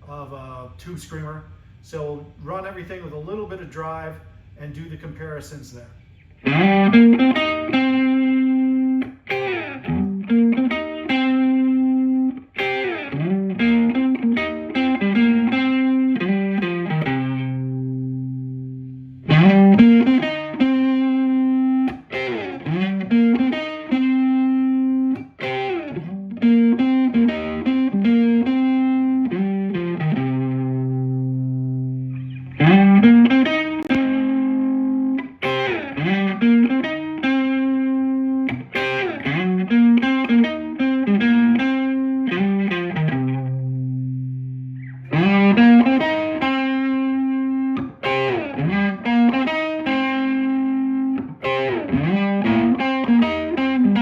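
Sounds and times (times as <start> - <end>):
overdriven electric guitar lick: 6.4 - 54.0.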